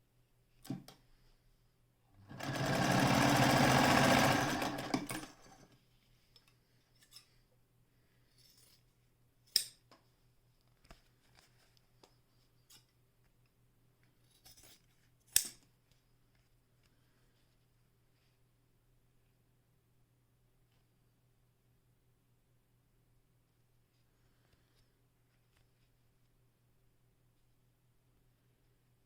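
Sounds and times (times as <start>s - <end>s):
sewing machine stitching: 2.2s - 5.7s.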